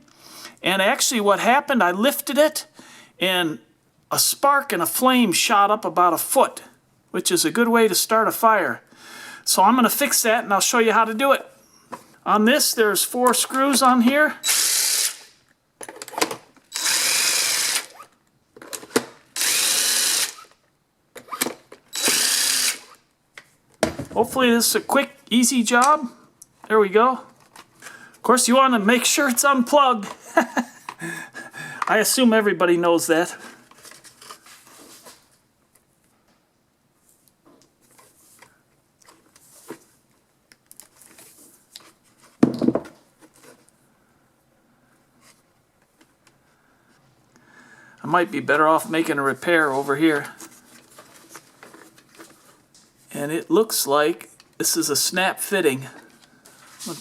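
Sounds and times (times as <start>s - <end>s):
power drill running: 14.4s - 15.3s, 16.7s - 18.0s, 19.4s - 20.5s, 21.9s - 23.0s
clicks of drill bit and screws: 14.5s - 18.0s, 18.6s - 20.6s, 21.2s - 23.0s
scrapes and rustles of handling: 33.3s - 36.3s, 37.0s - 43.9s, 45.1s - 46.2s, 49.2s - 53.1s, 55.8s - 57.0s.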